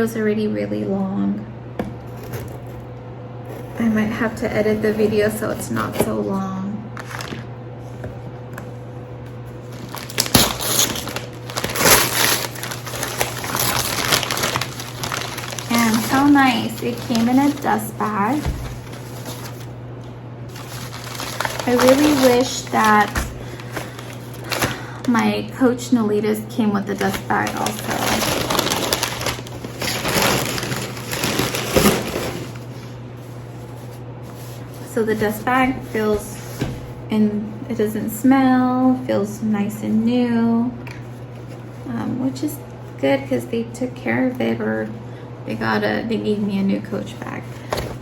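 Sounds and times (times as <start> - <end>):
packaging crinkling and crackling: 7.0 - 7.5, 9.3 - 19.8, 20.5 - 25.3, 26.8 - 34.8.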